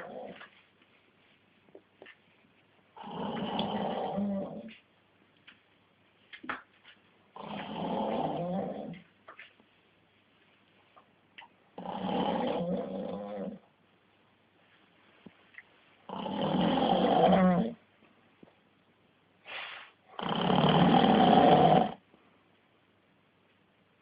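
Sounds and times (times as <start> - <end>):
man snoring: 3.0 - 4.6, 11.8 - 13.6, 16.1 - 17.8, 20.2 - 22.0.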